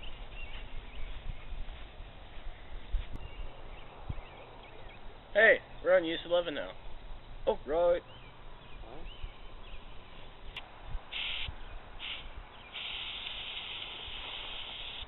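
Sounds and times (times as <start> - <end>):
birds chirping faintly: 0.0 - 10.6
aerosol can spraying: 11.1 - 12.2, 12.8 - 15.0.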